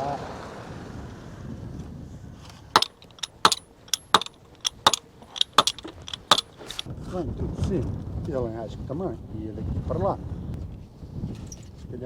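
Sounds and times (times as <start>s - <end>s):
metal striking metal clinks: 2.8s - 6.9s.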